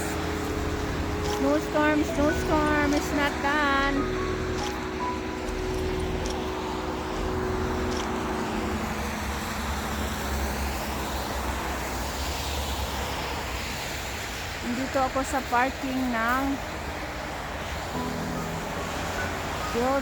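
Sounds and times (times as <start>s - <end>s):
tyre and engine rumble: 0.0s - 11.9s.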